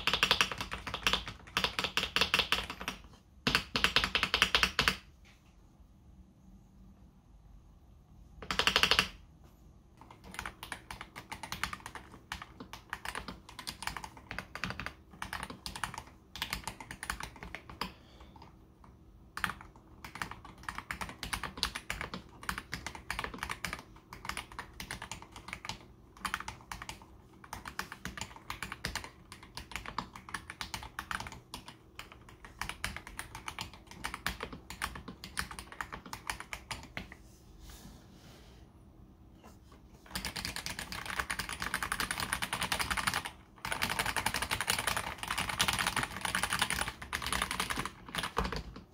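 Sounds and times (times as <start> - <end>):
mechanical keyboard typing: 0.0 - 5.1, 8.4 - 9.2, 10.0 - 37.2, 40.0 - 48.9.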